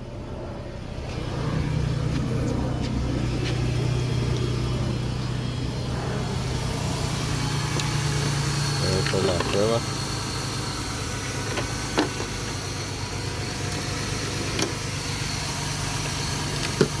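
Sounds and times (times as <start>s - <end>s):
van engine idling: 0.0s - 17.0s.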